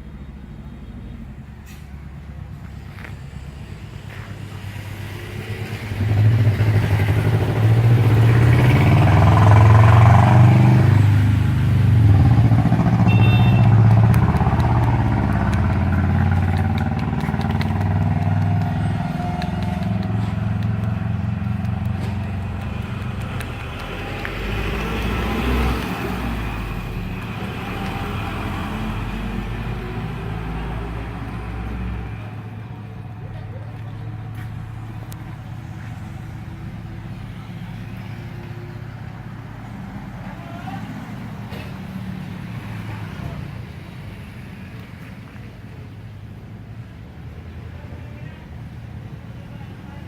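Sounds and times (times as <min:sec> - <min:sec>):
engine running: 0:00.0 - 0:46.0
short high beep: 0:13.1 - 0:13.7.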